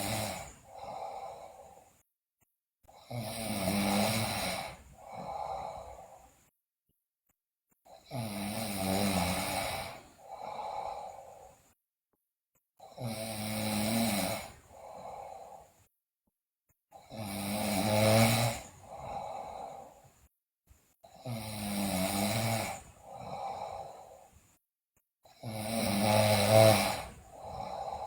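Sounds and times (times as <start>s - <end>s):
girl snoring loudly: 0.0s - 1.8s, 3.0s - 6.3s, 7.9s - 11.5s, 12.8s - 15.7s, 17.0s - 20.0s, 21.1s - 24.2s, 25.4s - 28.0s.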